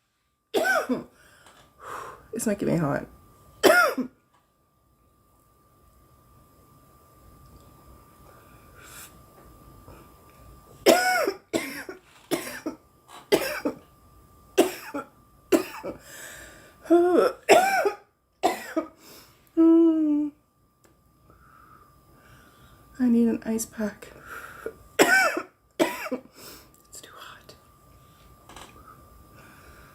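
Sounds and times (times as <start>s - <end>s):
woman coughing hard: 0.6s - 1.1s, 3.6s - 4.2s, 10.8s - 13.8s, 14.6s - 16.0s, 17.1s - 19.0s, 25.0s - 26.3s
woman groaning: 16.9s - 17.4s, 19.6s - 20.4s.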